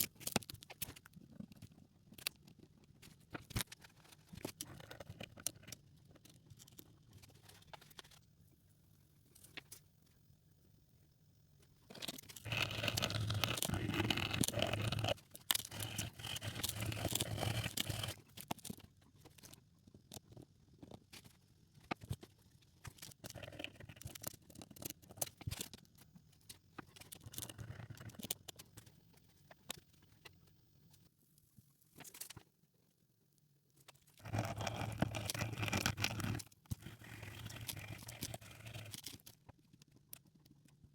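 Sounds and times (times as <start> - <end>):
light scratches and clicks: 11.9 - 31.1, 33.8 - 40.9
scrubbing and scraping hard object: 12.4 - 18.3, 34.2 - 39.2.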